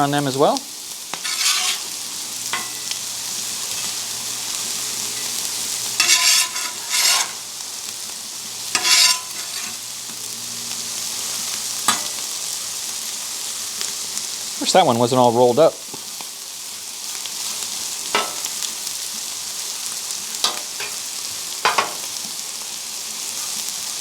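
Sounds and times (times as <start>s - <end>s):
food sizzling on a griddle: 0.0s - 24.0s
metal spatula scraping steel: 1.1s - 3.0s, 5.2s - 7.6s, 8.7s - 9.9s, 11.9s - 12.2s, 18.2s - 18.6s, 20.4s - 22.1s.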